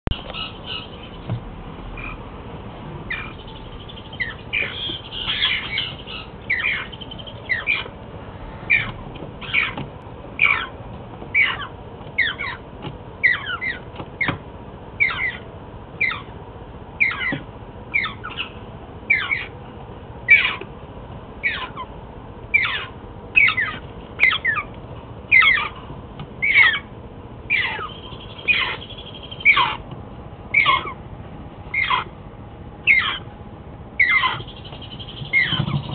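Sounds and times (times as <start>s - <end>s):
parrot chicks squawking: 0.1s - 1.3s, 2.0s - 2.2s, 3.1s - 14.4s, 15.0s - 16.4s, 17.0s - 19.6s, 20.2s - 20.7s, 21.4s - 24.7s, 25.3s - 26.9s, 27.5s - 29.9s, 30.5s - 31.0s, 31.7s - 32.2s, 32.8s - 33.3s, 34.0s - 35.9s.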